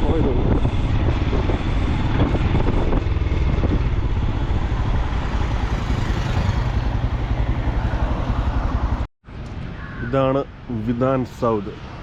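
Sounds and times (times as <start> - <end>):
motorcycles passing: 0.0 - 9.1
cars passing: 0.6 - 12.0.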